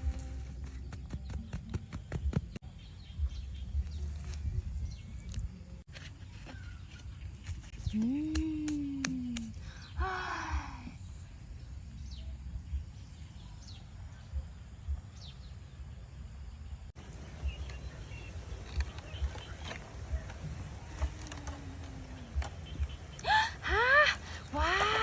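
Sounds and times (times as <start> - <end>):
high insect drone: 0.0 - 0.9.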